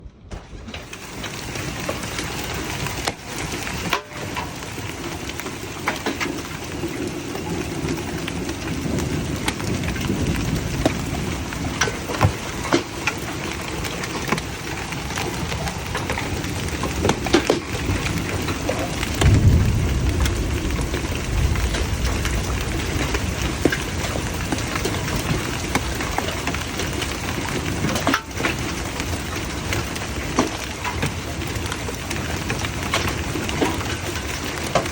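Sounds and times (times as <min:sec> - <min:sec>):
thunder rumble: 0:00.0 - 0:34.9
heavy rain and hail: 0:00.3 - 0:34.9.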